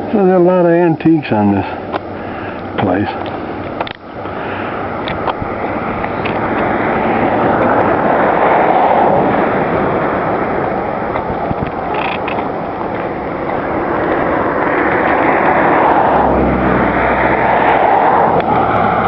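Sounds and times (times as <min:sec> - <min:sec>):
vehicle passing by: 0:04.5 - 0:19.0.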